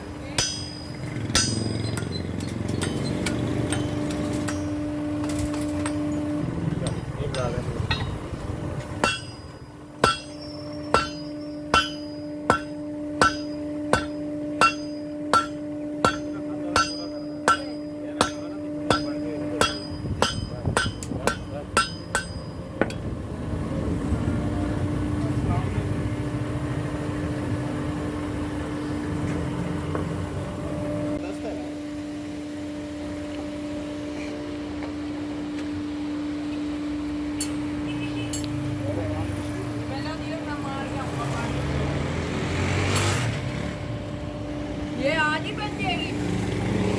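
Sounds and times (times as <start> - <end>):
steady hum: 0.0 - 29.1
hammer striking metal on anvil: 0.3 - 8.2, 8.8 - 23.1, 37.4 - 37.7.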